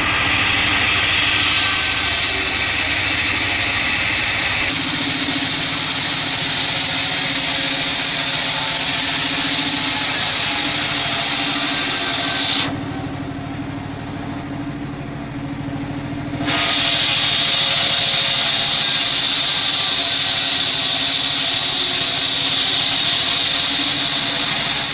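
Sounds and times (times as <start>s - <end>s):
blade hissing through wood: 0.0s - 13.4s, 16.4s - 24.9s
sawmill engine droning: 0.0s - 24.9s.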